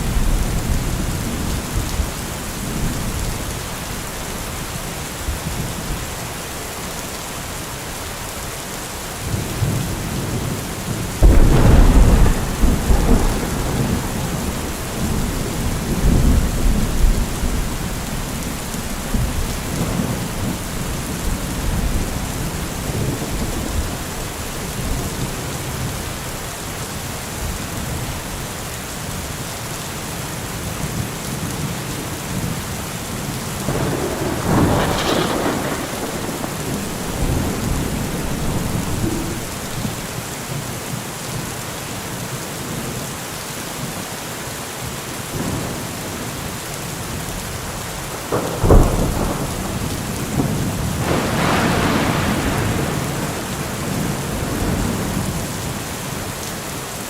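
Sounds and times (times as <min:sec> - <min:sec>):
heavy rain hissing: 0:00.0 - 0:57.0
deep thunder rumble: 0:09.3 - 0:26.2, 0:33.6 - 0:40.2, 0:48.2 - 0:55.8.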